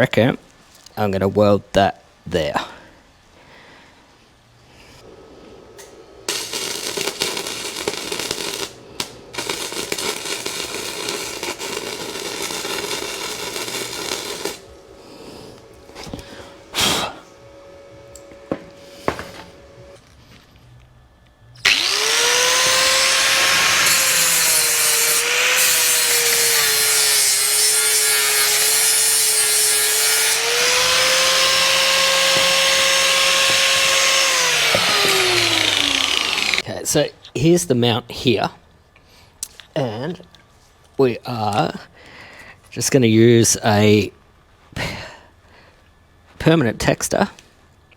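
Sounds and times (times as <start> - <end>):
crackling hiss: 4.7 - 17.4
angle grinder grinding steel: 6.3 - 14.7, 21.6 - 36.6.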